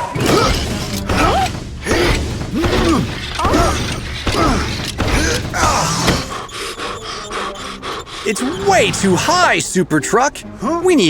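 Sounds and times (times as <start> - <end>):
cartoon squeaky glides: 5.6 - 9.6.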